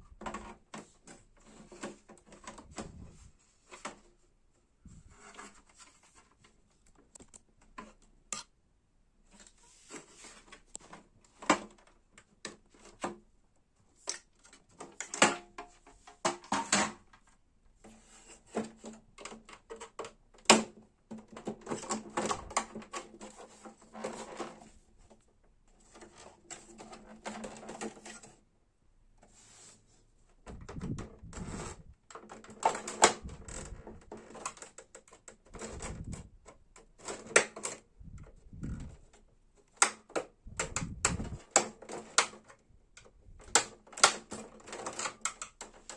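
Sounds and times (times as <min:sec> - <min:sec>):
printer parts clicking and rattling: 0:32.1 - 0:37.8, 0:38.8 - 0:45.9.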